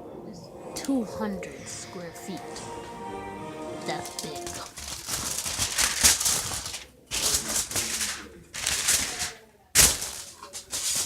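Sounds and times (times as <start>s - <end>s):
sheet material rustling: 3.9s - 11.0s.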